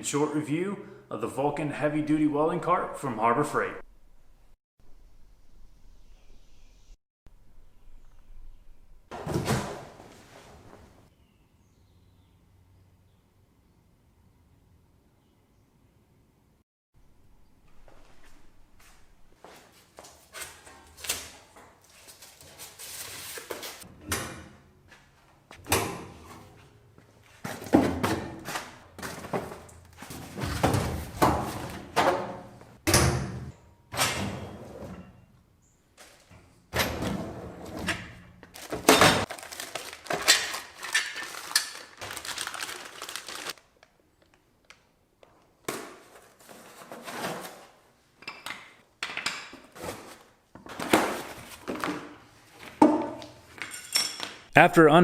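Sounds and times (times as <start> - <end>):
rustling and scraping: 9.2 - 11.1, 17.7 - 23.9, 45.9 - 48.0, 49.6 - 53.9.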